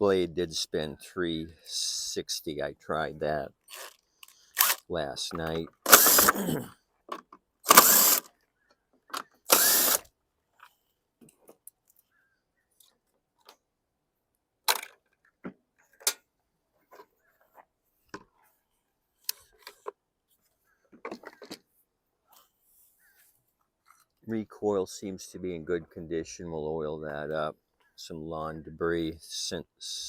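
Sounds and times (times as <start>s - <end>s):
power drill running: 5.9s - 6.4s, 7.7s - 8.3s, 9.5s - 10.0s
clicks and knocks of parts handled: 14.7s - 16.3s.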